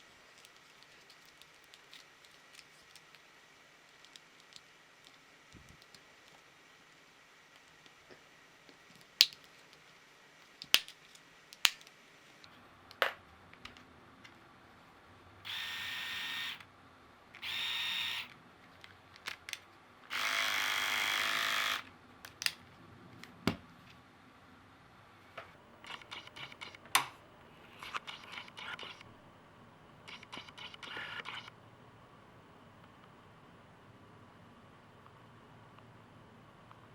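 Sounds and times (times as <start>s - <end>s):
electric shaver buzzing: 15.5s - 16.6s, 17.4s - 18.3s, 20.1s - 21.9s.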